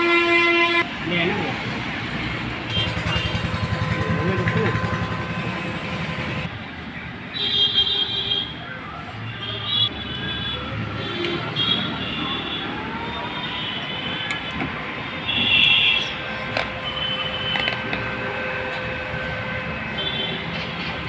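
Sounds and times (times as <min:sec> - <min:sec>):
car horns honking: 0:00.0 - 0:01.0, 0:02.7 - 0:06.5, 0:09.3 - 0:20.5
road traffic: 0:00.0 - 0:21.0.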